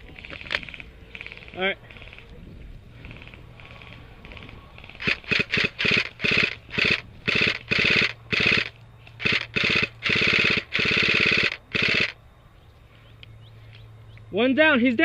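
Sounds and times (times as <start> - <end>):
electric gun firing bursts: 4.8 - 12.2.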